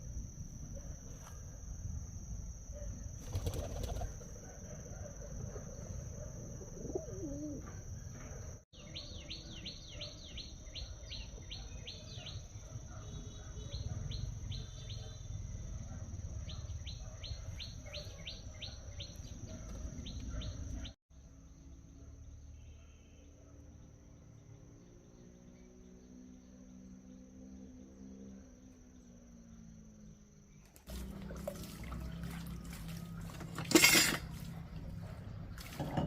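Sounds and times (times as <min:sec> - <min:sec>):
bird chirping: 0:08.8 - 0:15.3.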